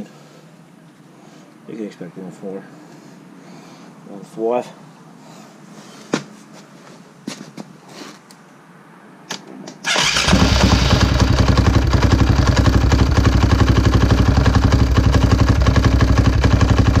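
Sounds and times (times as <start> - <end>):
motorcycle engine starting and idling: 9.7 - 17.0.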